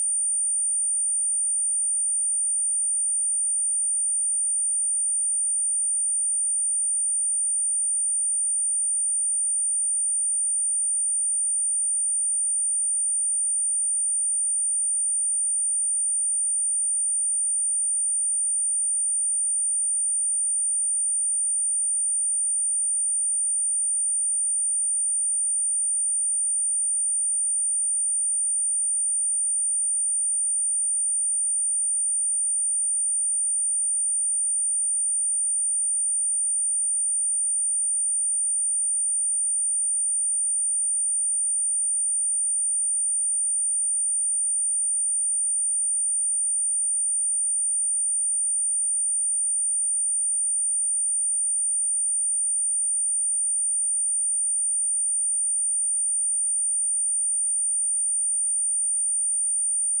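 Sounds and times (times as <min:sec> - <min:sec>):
high-pitched sine test tone: 0:44.4 - 1:00.0.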